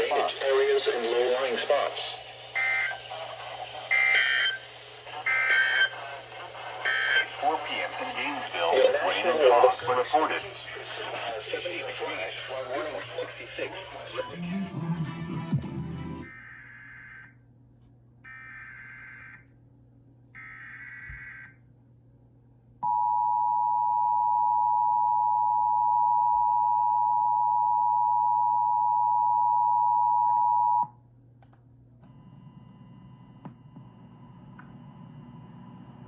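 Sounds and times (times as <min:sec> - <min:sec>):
two-tone attention signal: 0:02.6 - 0:03.0, 0:05.2 - 0:05.9.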